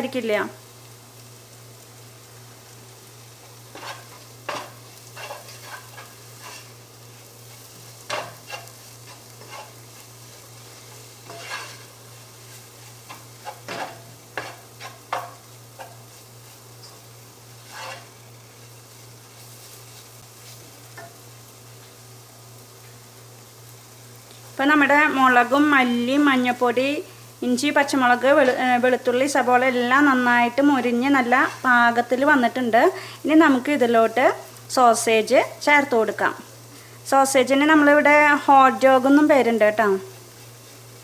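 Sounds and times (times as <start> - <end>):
food frying in oil: 0.0 - 41.0
spoon scraping a pan: 3.7 - 21.2, 30.8 - 31.8.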